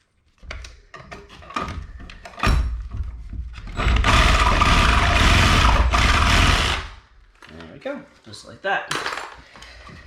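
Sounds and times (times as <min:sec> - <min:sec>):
knocks and rattles: 0:00.4 - 0:06.9.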